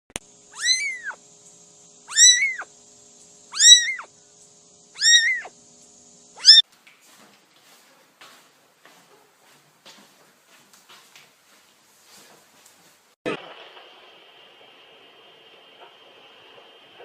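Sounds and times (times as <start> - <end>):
cat meowing: 0.5 - 1.2, 2.1 - 2.7, 3.5 - 4.1, 5.0 - 5.5, 6.4 - 6.6.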